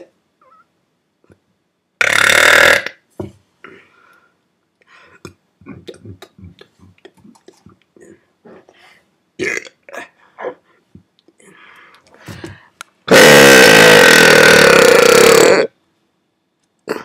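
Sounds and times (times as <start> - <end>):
man burping: 2.0 - 3.0, 9.4 - 10.6, 13.1 - 15.7.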